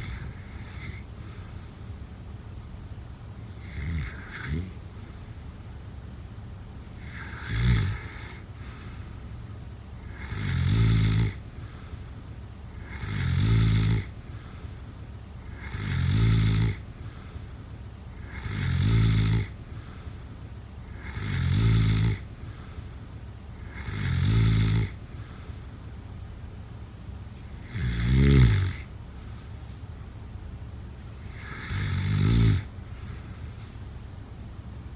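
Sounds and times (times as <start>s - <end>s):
person snoring: 0.0s - 1.1s, 3.6s - 4.8s, 7.0s - 9.0s, 10.0s - 11.4s, 18.2s - 19.5s, 20.9s - 22.2s, 23.6s - 25.0s, 27.6s - 28.9s, 31.2s - 33.3s.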